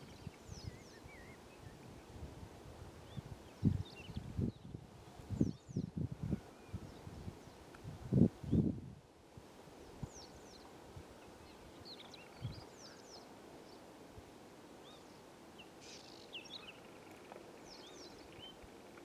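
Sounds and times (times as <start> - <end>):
small birds chirping and whistling: 0.0 - 1.8, 3.0 - 4.7, 11.4 - 13.3, 14.8 - 17.0, 17.6 - 18.6.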